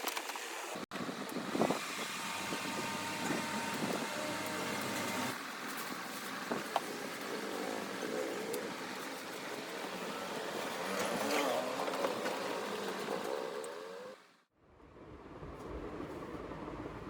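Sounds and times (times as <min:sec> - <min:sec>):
mechanical hum: 0:00.1 - 0:17.0.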